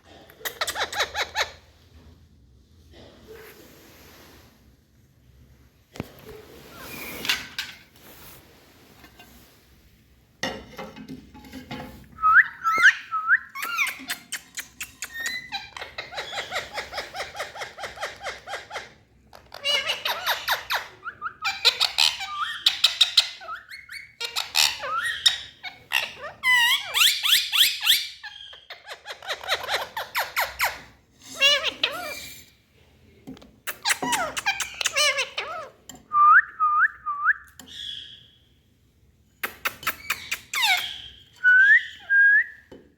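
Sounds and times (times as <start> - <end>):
parakeets squawking: 12.6 - 32.5, 33.7 - 35.8.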